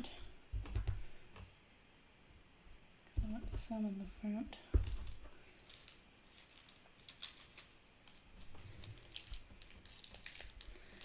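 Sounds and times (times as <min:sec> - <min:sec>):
packaging crinkling: 0:04.8 - 0:11.0
small plastic parts clicking: 0:04.8 - 0:11.0.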